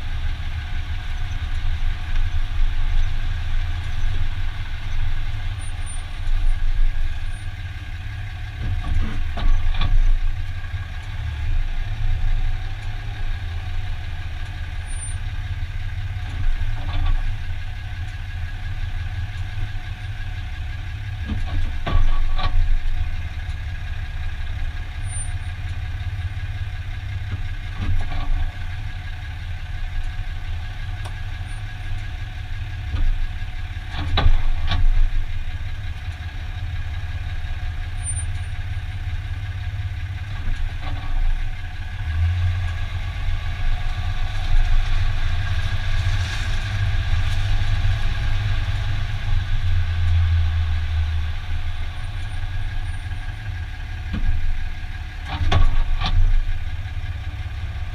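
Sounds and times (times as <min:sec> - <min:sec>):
truck engine rumbling: 0:00.0 - 0:57.9
drivetrain clunks: 0:08.6 - 0:11.1, 0:16.2 - 0:17.6, 0:21.2 - 0:23.1, 0:29.8 - 0:39.3, 0:40.1 - 0:57.0.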